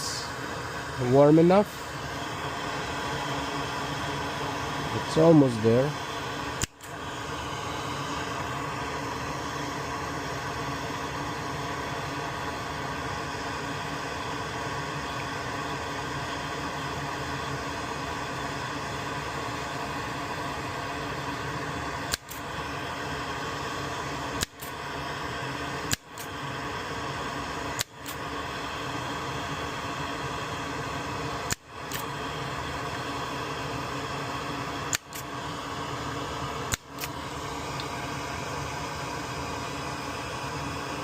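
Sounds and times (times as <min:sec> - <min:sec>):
hot air blower blowing: 0:00.0 - 0:41.0
sharp clicks: 0:06.6 - 0:07.0, 0:25.9 - 0:26.3, 0:27.8 - 0:28.2, 0:34.9 - 0:35.3, 0:36.7 - 0:37.2.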